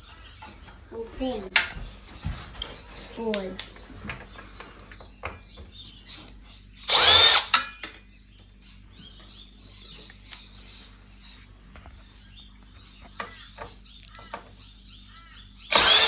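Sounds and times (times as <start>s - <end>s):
electric screwdriver motor whine: 6.9s - 7.7s, 15.7s - 16.0s
screwdriver click: 6.9s - 8.0s.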